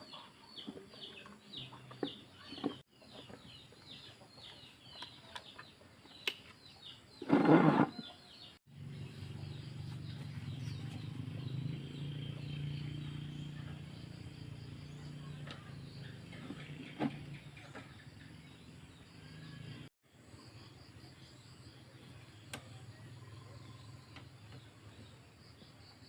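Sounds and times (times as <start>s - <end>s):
small birds chirping: 0.0s - 26.0s
low motor hum: 8.7s - 19.9s.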